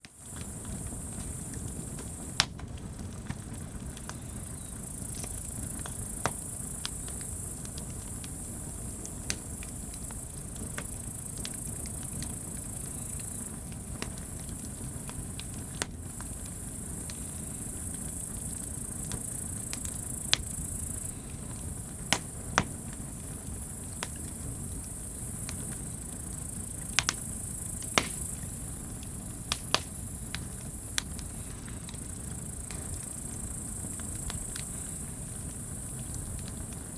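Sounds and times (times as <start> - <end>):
campfire crackling: 0.0 - 36.9.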